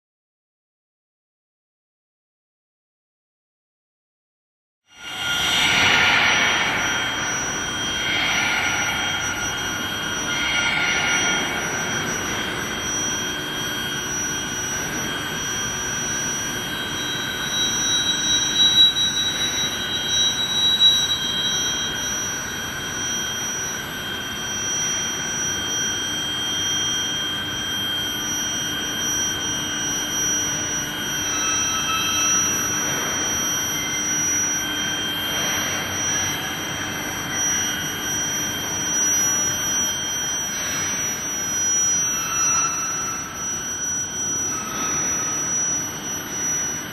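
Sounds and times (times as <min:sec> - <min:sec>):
high-pitched machinery whine: 0:04.9 - 0:46.9
machinery hiss: 0:05.0 - 0:12.9.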